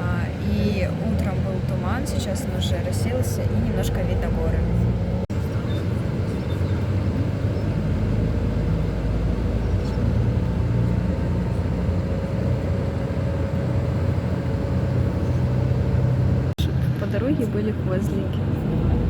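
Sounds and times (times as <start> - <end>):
road noise: 0.0 - 19.0
vehicle engine drone: 0.0 - 19.0.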